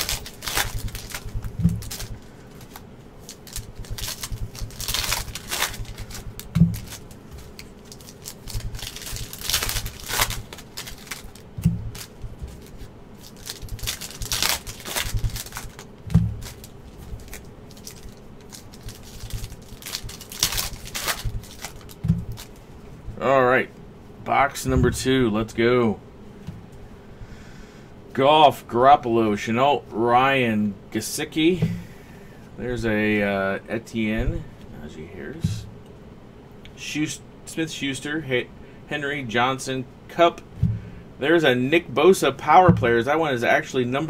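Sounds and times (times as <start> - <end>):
cards rustling: 0.0 - 22.6
wrappers tearing and crinkling: 0.0 - 22.6.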